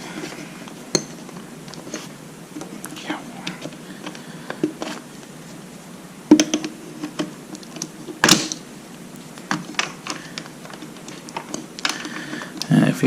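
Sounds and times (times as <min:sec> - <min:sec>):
plastic parts clicking and knocking: 0:06.3 - 0:08.6, 0:09.4 - 0:12.7.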